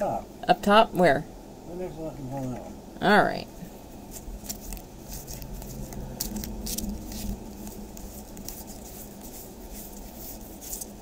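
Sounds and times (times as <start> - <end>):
low steady hum: 0.0 - 11.0
cards flipping and sliding: 4.1 - 11.0.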